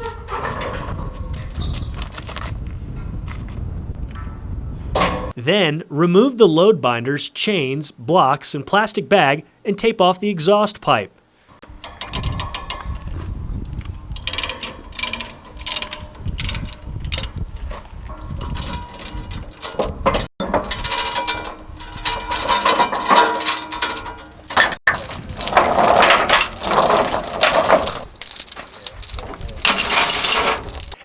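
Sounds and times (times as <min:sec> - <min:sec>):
chains clanking: 0:11.6 - 0:31.0
metallic ratcheting clicks: 0:11.7 - 0:13.0, 0:13.7 - 0:17.4.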